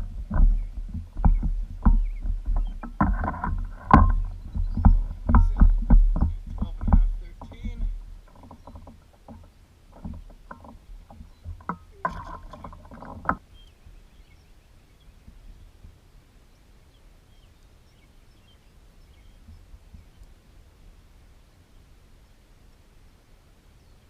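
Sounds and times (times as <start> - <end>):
low rumble: 0.0 - 8.3
gear knocking against boat: 0.0 - 13.4.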